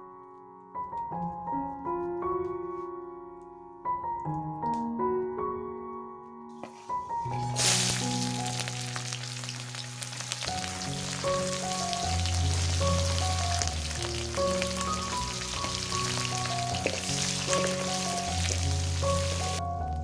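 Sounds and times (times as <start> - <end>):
background music: 0.0 - 20.0
food sizzling in oil: 7.4 - 19.6.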